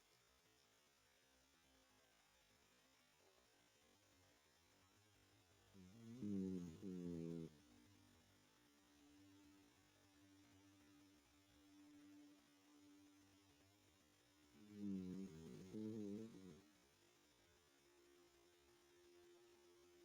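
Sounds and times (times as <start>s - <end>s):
dog snoring: 5.7s - 8.2s, 14.5s - 16.8s.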